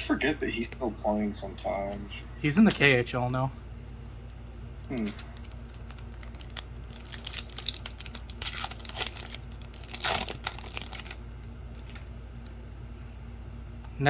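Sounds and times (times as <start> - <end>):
wrapper tearing and crinkling: 4.9 - 12.5.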